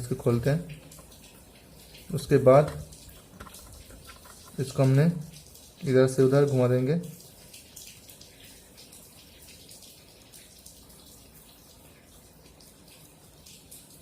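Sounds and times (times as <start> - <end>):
low steady hiss: 0.0 - 14.0
clicking and scratching of hand work: 2.7 - 4.6.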